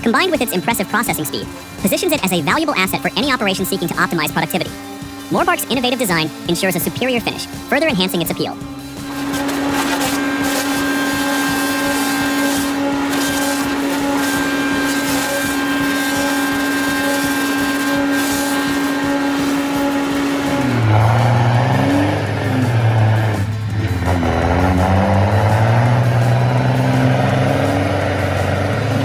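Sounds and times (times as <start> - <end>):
engine rising and falling: 0.0 - 29.0
machine whine: 8.5 - 29.0
wood being stripped: 9.0 - 21.9.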